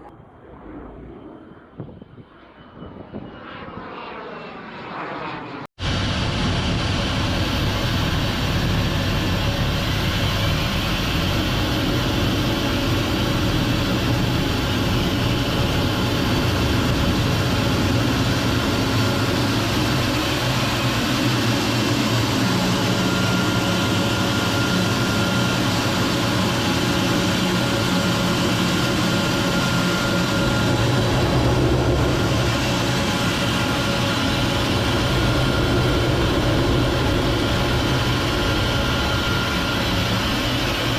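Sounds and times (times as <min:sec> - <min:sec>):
jet engine running: 0:00.0 - 0:40.9.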